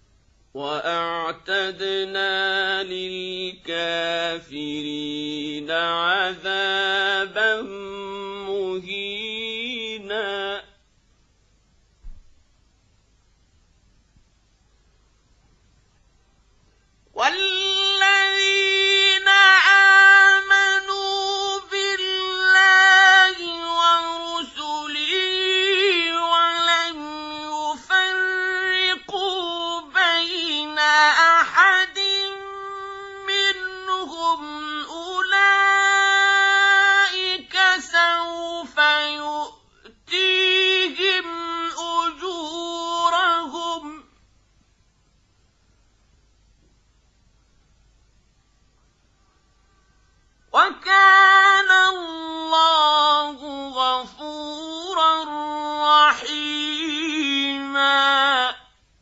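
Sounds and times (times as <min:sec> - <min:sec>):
man chanting melodically: 0:00.6 - 0:10.8, 0:17.2 - 0:44.1, 0:50.5 - 0:58.7.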